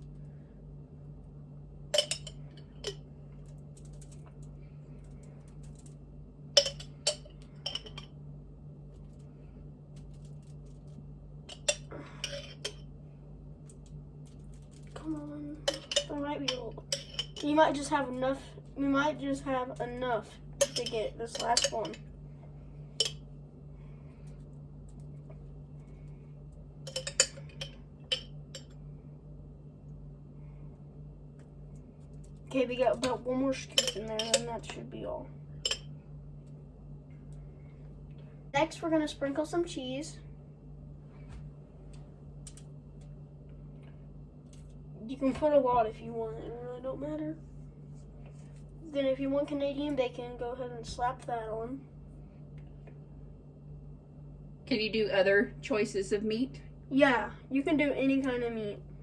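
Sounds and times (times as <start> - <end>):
faint low hum: 0.0 - 59.0
metal spoon clinking on dishes: 2.0 - 3.0, 20.6 - 22.0, 26.9 - 28.7, 33.8 - 34.4, 35.6 - 35.9.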